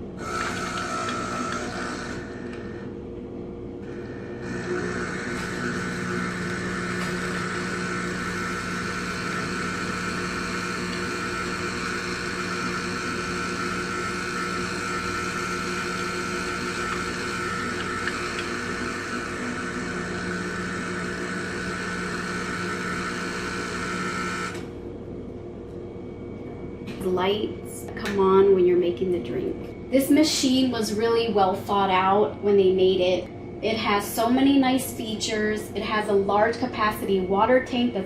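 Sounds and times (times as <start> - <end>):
espresso machine humming: 0.0 - 3.0, 3.8 - 24.8.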